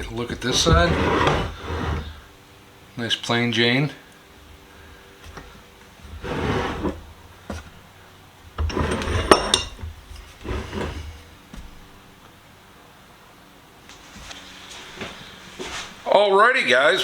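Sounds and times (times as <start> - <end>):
vise scraping on workbench: 0.0 - 2.3, 5.2 - 7.8, 8.6 - 11.9.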